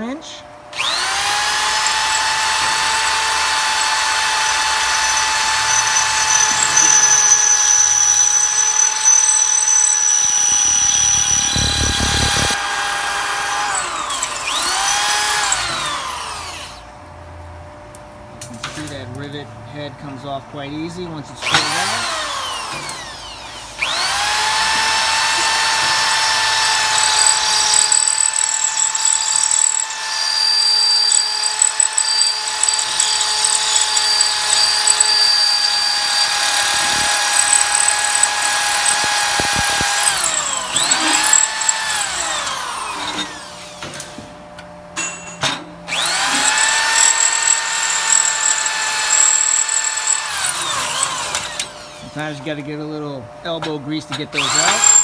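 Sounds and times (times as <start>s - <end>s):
electric drill drilling steel: 0.7s - 16.9s, 21.4s - 44.2s, 45.9s - 52.3s, 54.3s - 55.0s
clicks: 36.5s - 41.8s.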